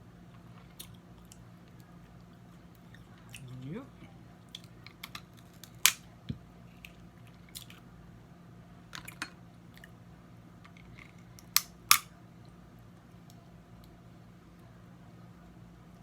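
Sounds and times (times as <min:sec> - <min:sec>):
faint low hum: 0:00.0 - 0:16.0
crab shells cracking by hand: 0:04.5 - 0:06.1, 0:11.0 - 0:12.1.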